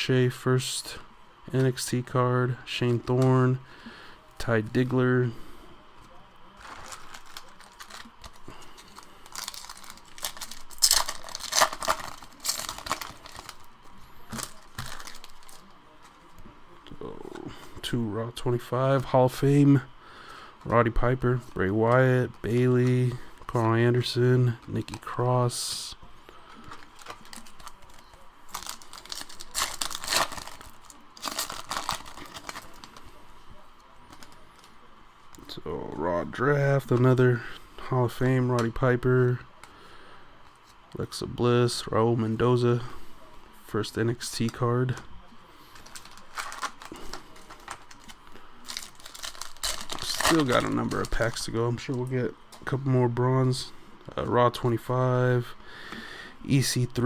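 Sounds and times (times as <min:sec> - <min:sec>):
card pack wrapper tearing and crinkling: 0:06.6 - 0:13.7, 0:14.3 - 0:15.7, 0:26.6 - 0:33.0, 0:45.7 - 0:52.0.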